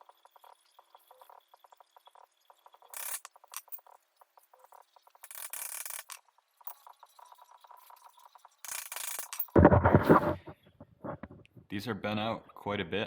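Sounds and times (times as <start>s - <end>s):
screwdriver scraping metal: 3.0s - 3.8s, 5.3s - 6.2s, 8.7s - 10.2s.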